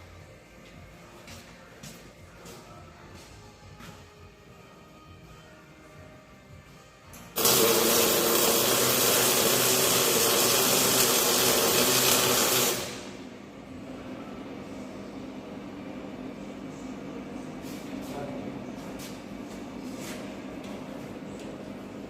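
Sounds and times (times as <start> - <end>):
welding arc: 7.4 - 13.2.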